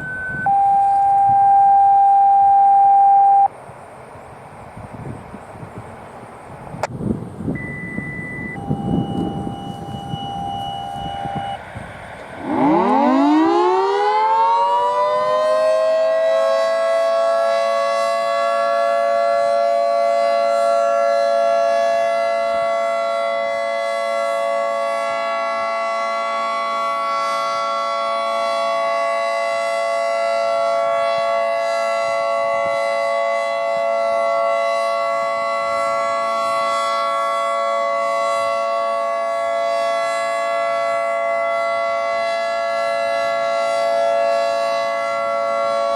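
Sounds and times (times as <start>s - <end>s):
two-tone warning siren: 0.0s - 3.5s, 7.5s - 45.9s.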